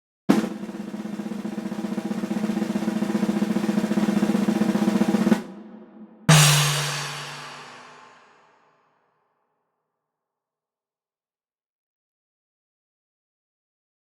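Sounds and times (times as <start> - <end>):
snare drum roll: 0.3 - 8.4
low drum hit: 5.3 - 8.3
cymbal crash: 5.4 - 8.5.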